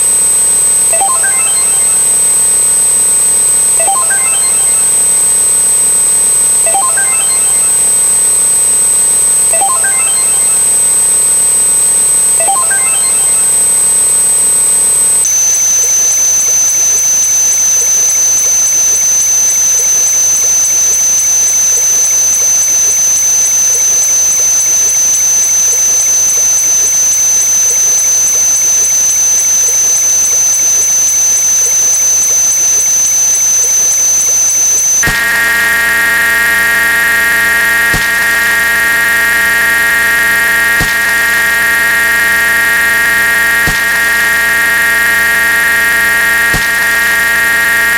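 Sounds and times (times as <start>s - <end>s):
electronic drone with whistle tone: 0.0s - 18.4s, 31.8s - 47.9s
buzzing chord of steady tones: 35.0s - 47.9s.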